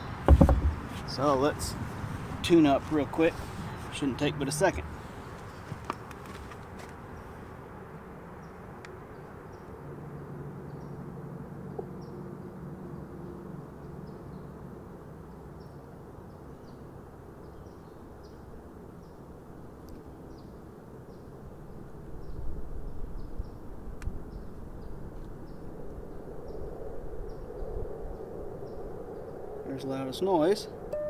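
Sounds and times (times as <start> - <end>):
low bumps: 0.0 - 7.0.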